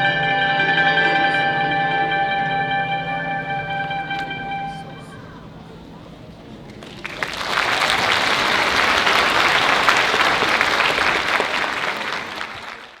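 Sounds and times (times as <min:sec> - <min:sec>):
audience applauding: 0:06.7 - 0:13.0.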